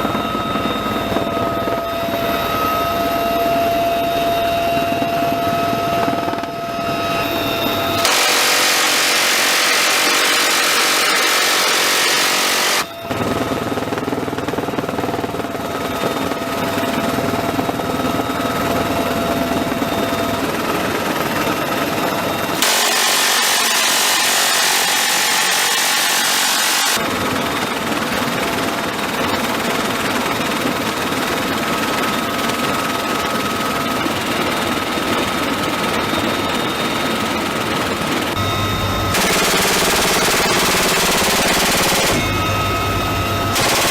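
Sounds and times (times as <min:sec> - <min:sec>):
aircraft engine noise: 0:00.0 - 0:43.9
minigun firing: 0:08.0 - 0:13.5, 0:22.6 - 0:27.0, 0:39.1 - 0:42.4, 0:43.6 - 0:43.9.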